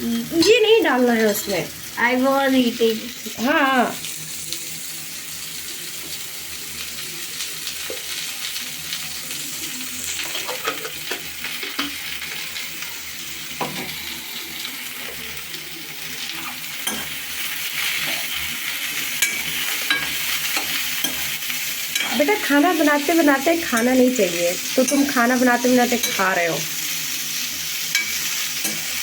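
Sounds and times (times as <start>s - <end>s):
vegetables sizzling in oil: 0.0s - 29.0s
spoon scraping a pan: 10.1s - 12.7s, 16.2s - 29.0s.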